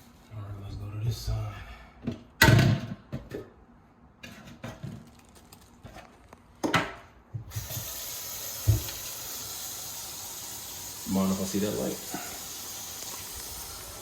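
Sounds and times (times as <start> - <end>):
water running into sink: 7.5 - 14.0.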